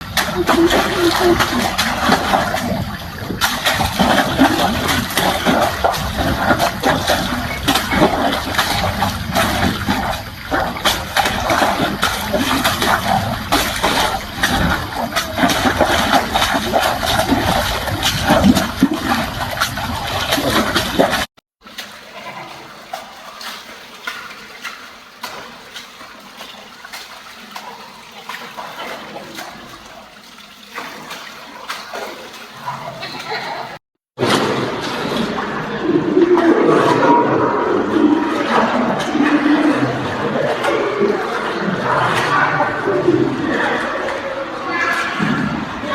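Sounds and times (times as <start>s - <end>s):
water spraying and splashing: 0.0s - 33.8s.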